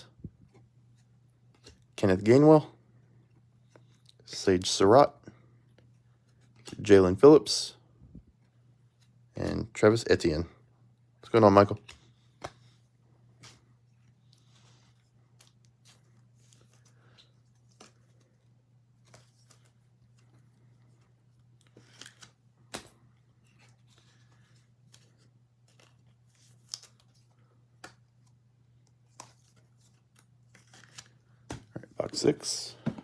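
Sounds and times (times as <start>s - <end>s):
trading cards clicking and rustling: 19.0s - 33.0s.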